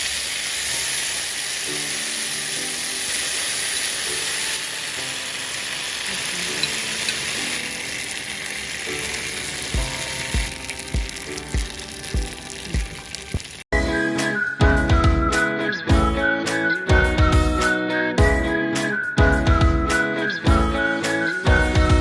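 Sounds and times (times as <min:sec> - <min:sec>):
chicken sizzling in hot oil: 0:00.0 - 0:13.7.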